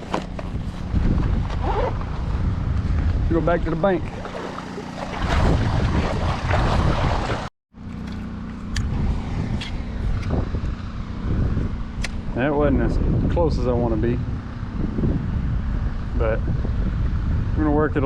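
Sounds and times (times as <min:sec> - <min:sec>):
wind buffeting microphone: 0:00.0 - 0:07.5, 0:08.8 - 0:18.0
moving water: 0:03.9 - 0:07.5.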